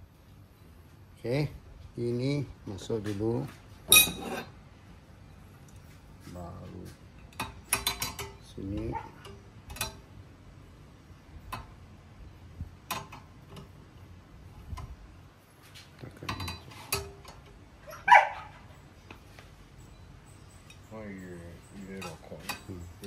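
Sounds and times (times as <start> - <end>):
metal clank: 3.9 - 4.5, 7.3 - 10.1
metal parts clicking and clinking: 7.2 - 10.0, 16.2 - 17.6, 21.7 - 23.0.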